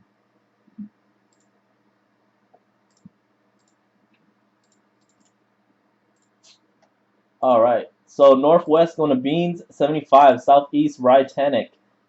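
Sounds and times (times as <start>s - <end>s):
faint clicks: 0.7s - 1.6s, 2.5s - 5.4s.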